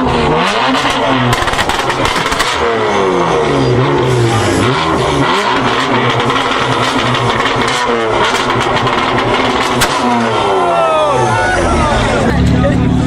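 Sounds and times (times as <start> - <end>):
car engine revving: 0.0 - 13.0
exhaust pops and bangs: 0.1 - 2.8, 5.5 - 10.4.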